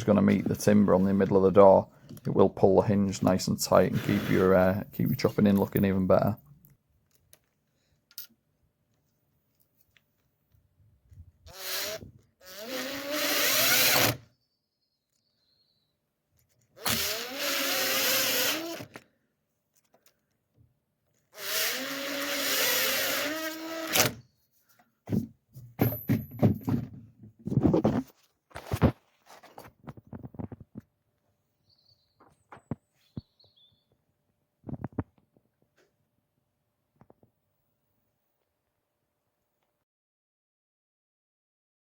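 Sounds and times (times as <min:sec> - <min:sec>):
power drill running: 0:11.5 - 0:14.2, 0:16.8 - 0:18.9, 0:21.4 - 0:24.2.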